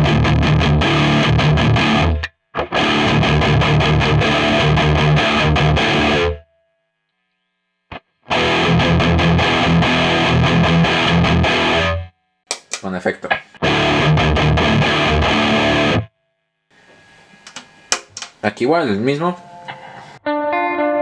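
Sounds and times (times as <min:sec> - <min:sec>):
distorted electric guitar riff: 0:00.0 - 0:06.5, 0:07.9 - 0:16.1, 0:19.2 - 0:21.0.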